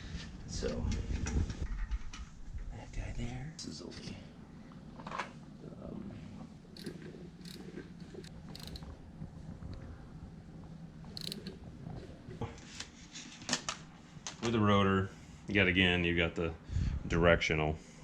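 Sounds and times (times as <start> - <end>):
low metallic rattle: 6.8 - 9.0, 11.1 - 11.6
sharp clicks: 8.2 - 8.9, 11.2 - 11.6.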